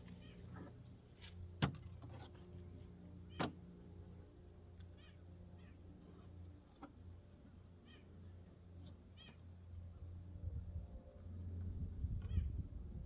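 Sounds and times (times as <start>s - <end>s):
low steady hum: 0.0s - 13.0s
faint short chirping calls: 4.8s - 6.3s, 7.8s - 9.5s.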